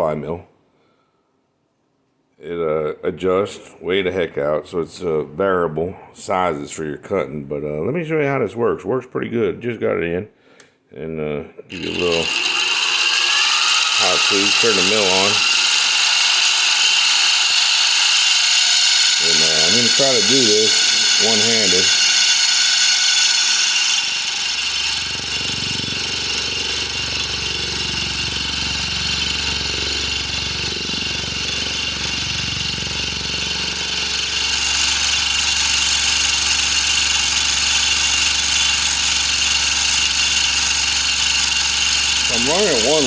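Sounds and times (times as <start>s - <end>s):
milling machine cutting metal: 11.7s - 43.0s.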